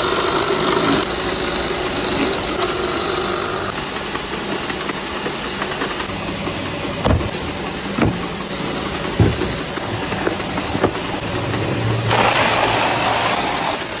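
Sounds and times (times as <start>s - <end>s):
engine humming: 5.8s - 12.4s
sharp knocks: 7.0s - 8.4s, 9.2s - 11.1s.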